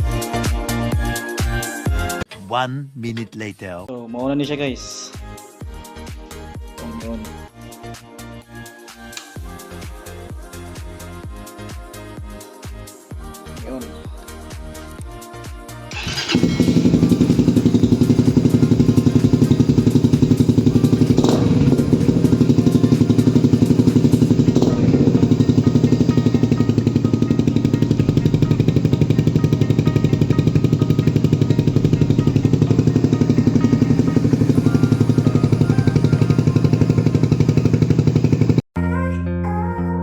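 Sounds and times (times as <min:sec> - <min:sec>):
motorcycle engine running: 0:15.9 - 0:38.7.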